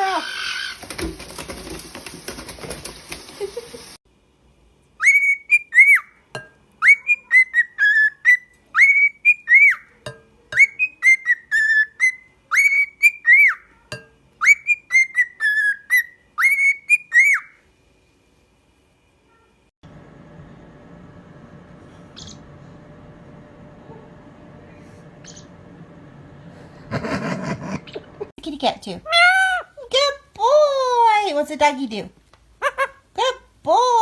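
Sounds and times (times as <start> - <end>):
parrot whistling a tune: 5.0 - 6.2, 6.8 - 9.9, 10.6 - 13.6, 14.4 - 17.6.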